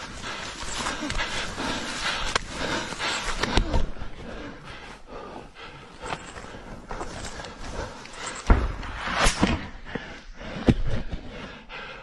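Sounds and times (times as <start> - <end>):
rustling movement: 0.0 - 9.2
sharp bangs and knocks: 8.3 - 9.9.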